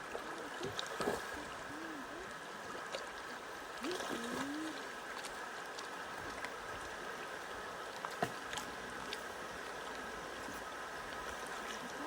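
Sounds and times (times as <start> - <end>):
river water lapping: 0.0 - 12.0
sharp ticks and splashes: 2.6 - 12.0.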